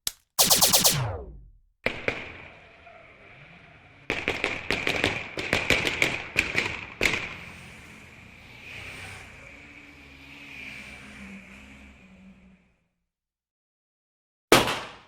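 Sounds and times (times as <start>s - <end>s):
gunshots: 0.4s - 2.4s.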